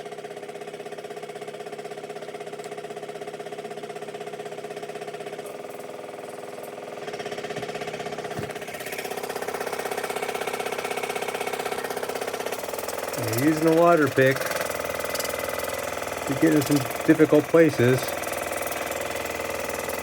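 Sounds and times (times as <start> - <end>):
water flosser pump humming: 0.0 - 20.0.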